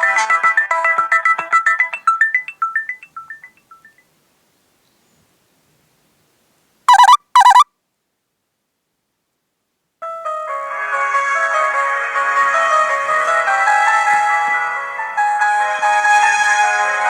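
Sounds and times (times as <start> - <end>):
electronic ringtone melody: 6.9 - 7.6
phone alert tones: 6.9 - 7.6.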